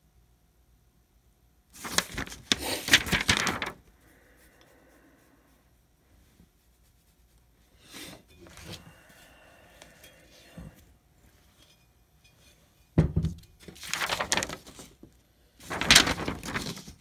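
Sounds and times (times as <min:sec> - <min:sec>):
packaging rustling: 0:01.8 - 0:03.8, 0:13.6 - 0:17.0.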